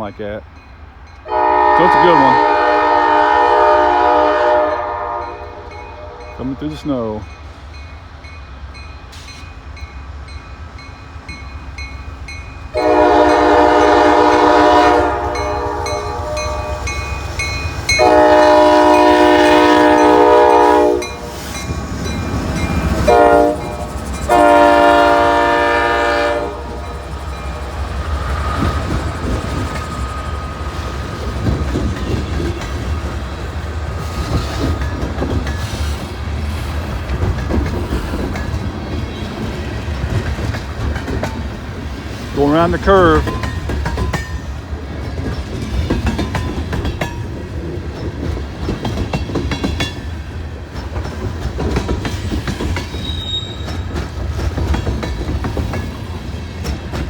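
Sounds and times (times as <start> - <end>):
train rumble and wheel clatter: 0.0 - 57.0
locomotive air horn blasts: 1.3 - 6.4, 12.8 - 17.0, 18.0 - 21.3, 23.0 - 26.8.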